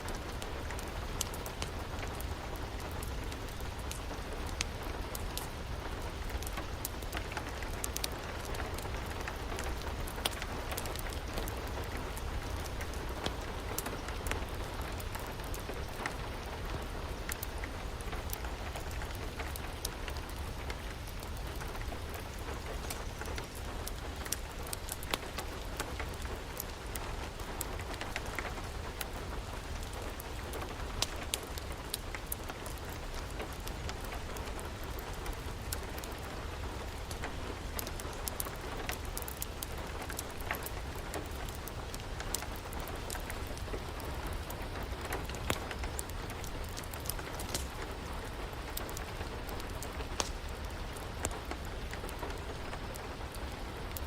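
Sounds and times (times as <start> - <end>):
steady rain falling: 0.0 - 54.0
wood fire crackling: 0.0 - 54.0.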